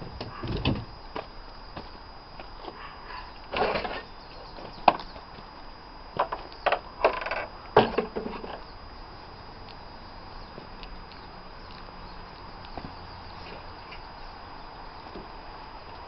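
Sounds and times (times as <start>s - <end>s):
knocks and clunks of tools: 6.2s - 8.6s.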